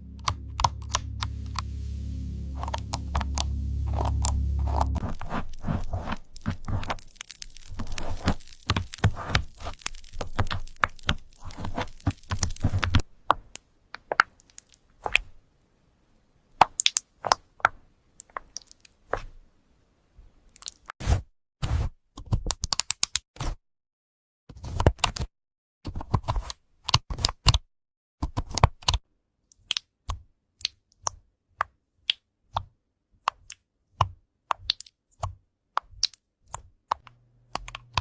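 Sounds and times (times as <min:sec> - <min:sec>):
low hum: 0:00.0 - 0:05.3.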